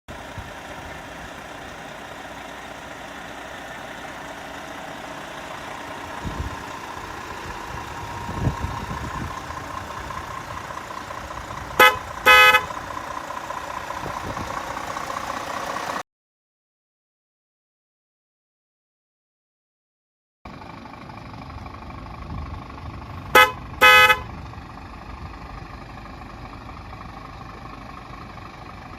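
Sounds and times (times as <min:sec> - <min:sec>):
horn sounding: 0:11.7 - 0:12.9, 0:23.3 - 0:24.4.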